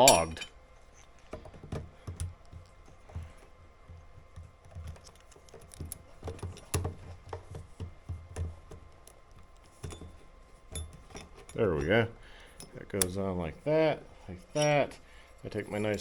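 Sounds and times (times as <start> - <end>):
plastic and metal parts clicking: 4.4 - 7.7.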